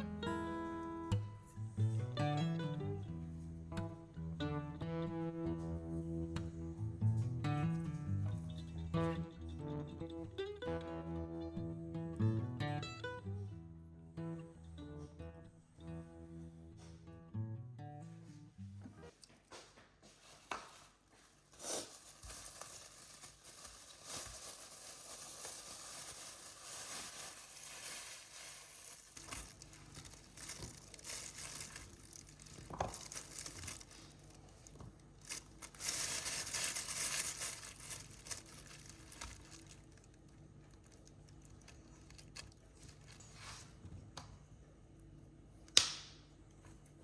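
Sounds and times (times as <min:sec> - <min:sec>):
packaging crinkling and rustling: 0:20.1 - 0:43.7.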